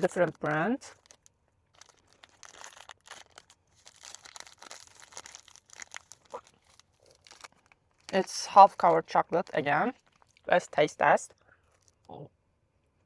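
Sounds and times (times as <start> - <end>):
plastic wrapper crinkling: 0.0 - 10.5, 11.6 - 12.1.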